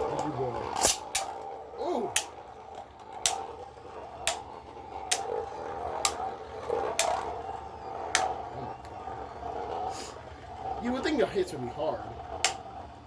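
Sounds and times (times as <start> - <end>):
spinning tops clicking together: 0.0 - 7.4, 8.0 - 8.9, 12.3 - 12.8
spinning tops whirring: 0.0 - 13.0.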